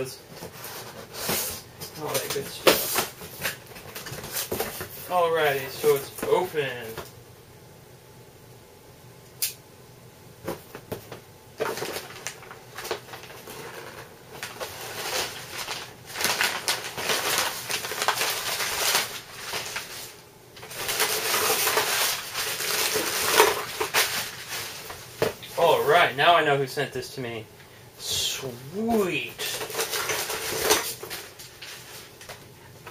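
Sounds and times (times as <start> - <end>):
packing material rustling: 0.4 - 7.0, 11.6 - 26.0, 28.8 - 32.9.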